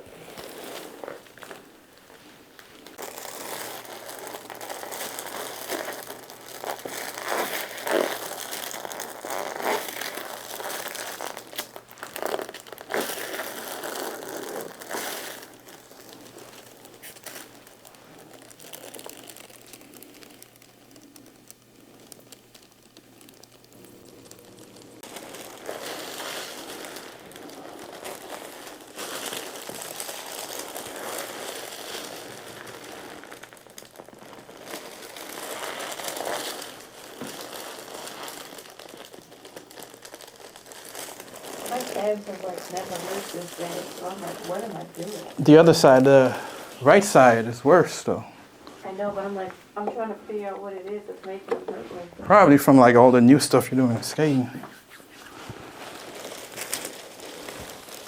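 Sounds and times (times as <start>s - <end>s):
hands rubbing during massage: 12.2s - 19.9s.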